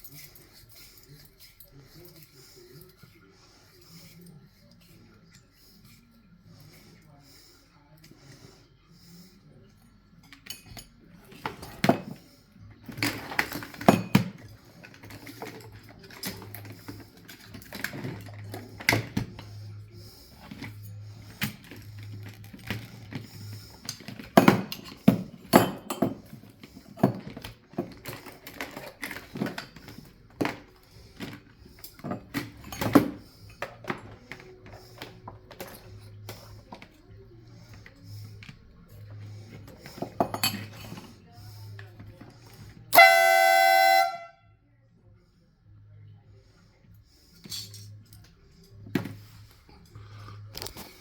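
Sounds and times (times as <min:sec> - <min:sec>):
small metal parts clinking: 0:47.4 - 0:48.3.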